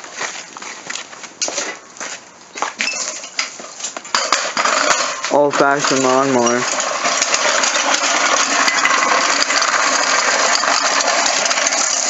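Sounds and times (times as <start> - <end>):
reel lawnmower whirring: 2.9 - 12.0.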